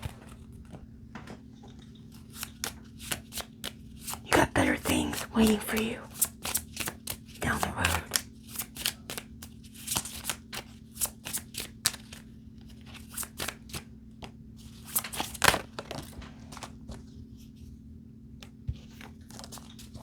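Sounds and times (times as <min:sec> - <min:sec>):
card snaps and rustles: 0:02.1 - 0:04.2, 0:05.1 - 0:16.8
cards being shuffled: 0:02.1 - 0:13.8, 0:14.7 - 0:16.8, 0:18.8 - 0:20.0.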